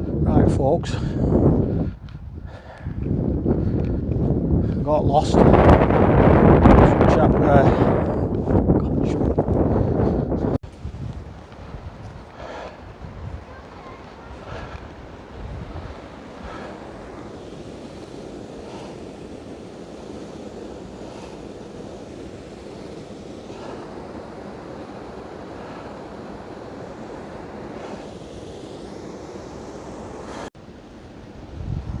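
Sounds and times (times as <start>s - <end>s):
wind buffeting microphone: 0.0s - 32.0s
river rushing: 10.7s - 31.7s.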